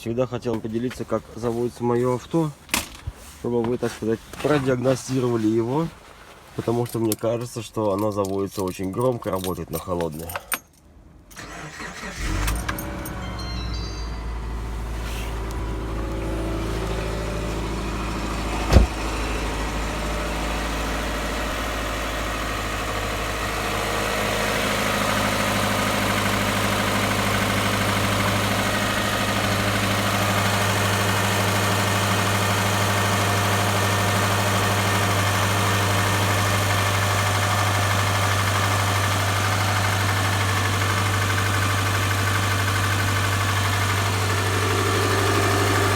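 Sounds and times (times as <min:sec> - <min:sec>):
car engine idling: 0:11.4 - 0:45.9
sharp thump: 0:18.6 - 0:19.2.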